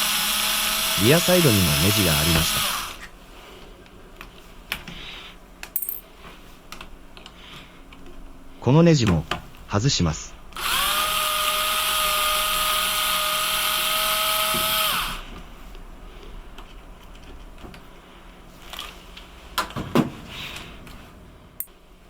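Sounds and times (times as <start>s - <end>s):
electric screwdriver whine: 0.0s - 3.0s, 10.6s - 15.3s.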